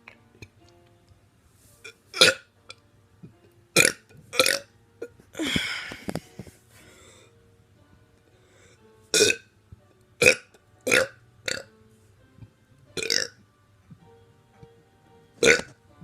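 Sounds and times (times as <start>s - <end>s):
person burping: 2.1s - 2.5s, 3.8s - 4.7s, 9.2s - 9.4s, 10.2s - 11.7s, 13.0s - 13.4s, 15.4s - 15.8s.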